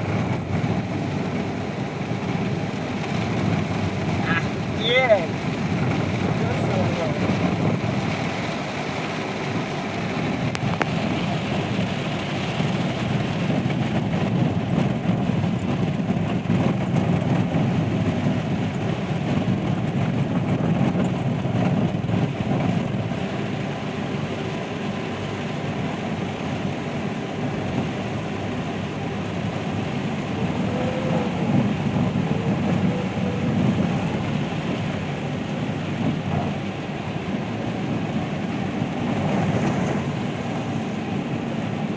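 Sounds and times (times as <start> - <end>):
heavy rain falling: 0.0 - 20.5.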